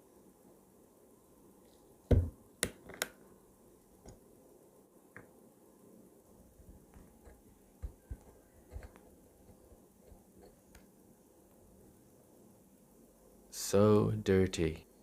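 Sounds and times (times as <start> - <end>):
knocks on workbench: 2.1 - 2.4.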